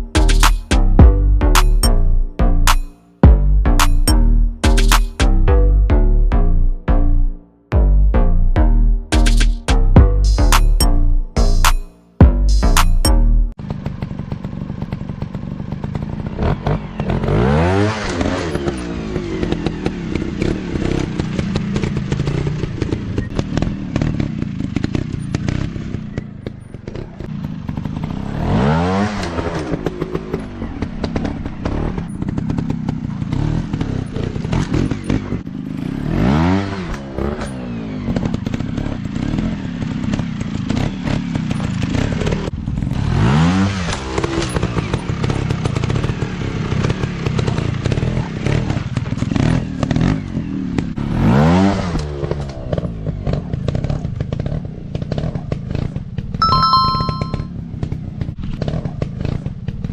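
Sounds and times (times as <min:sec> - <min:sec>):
motorcycle engines revving: 0:13.6 - 0:59.9.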